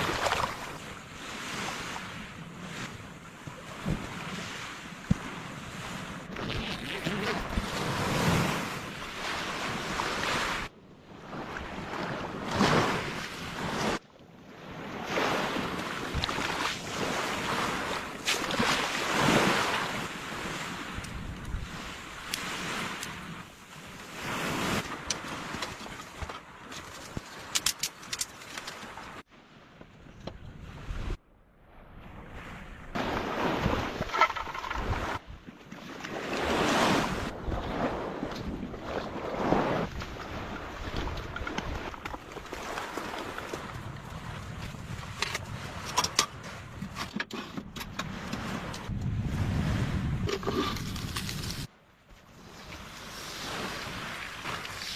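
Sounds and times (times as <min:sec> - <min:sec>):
sea waves on a beach: 0:00.0 - 0:54.9
wind on microphone: 0:36.3 - 0:51.7
wind buffeting microphone: 0:47.9 - 0:51.7.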